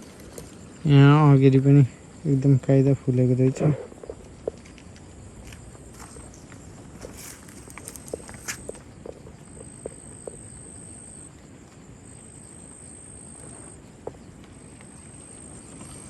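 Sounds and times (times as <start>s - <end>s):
insect trilling: 0.6s - 14.2s, 14.8s - 16.0s
soft footstep clicks: 4.0s - 10.4s.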